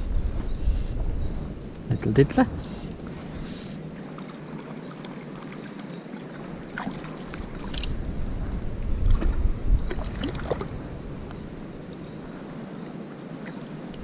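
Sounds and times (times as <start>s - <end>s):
low microphone rumble: 0.0s - 4.2s, 7.4s - 12.5s
water sloshing and splashing: 3.0s - 10.9s.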